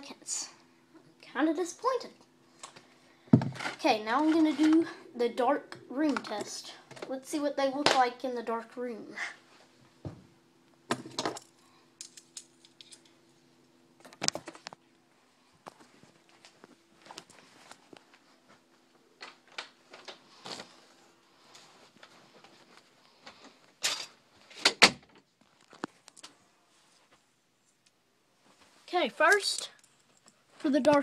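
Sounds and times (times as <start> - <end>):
faint steady hum: 0.0 - 31.0.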